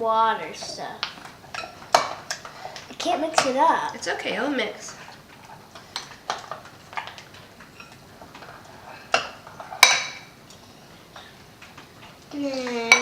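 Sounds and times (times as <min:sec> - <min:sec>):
spoon knocking and scraping bowl: 0:04.9 - 0:10.3.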